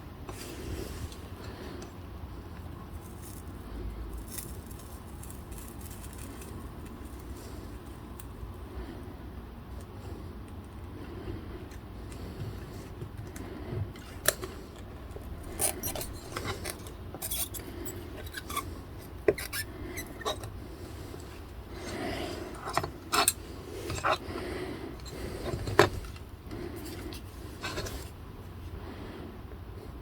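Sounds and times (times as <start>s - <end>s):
low steady hum: 0.0s - 30.0s
rubbing and scraping: 12.0s - 28.2s.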